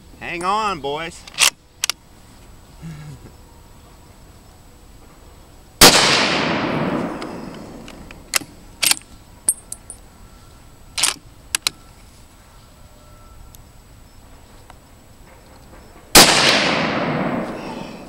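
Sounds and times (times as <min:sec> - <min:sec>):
rifle shot echoing: 0:05.8 - 0:07.9, 0:16.1 - 0:17.9.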